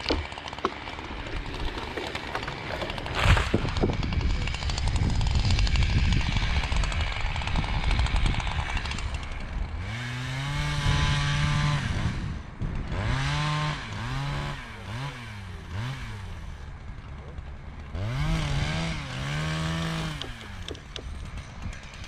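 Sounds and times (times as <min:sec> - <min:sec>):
chainsaw revving: 0:00.0 - 0:22.0.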